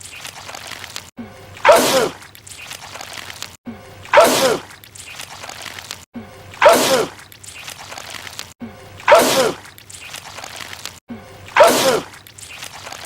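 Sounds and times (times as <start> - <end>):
man sneezing loudly: 9.1 - 9.6, 11.6 - 12.1.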